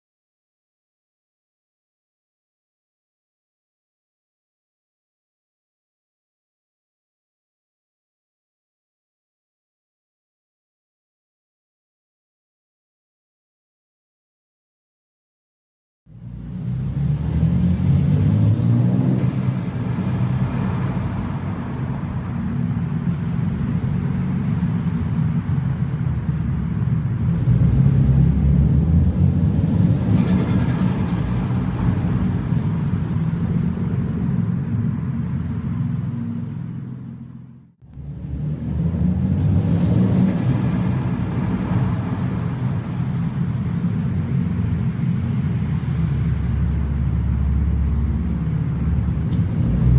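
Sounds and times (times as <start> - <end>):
car engine revving: 16.1 - 22.1, 26.6 - 35.8, 37.8 - 44.4.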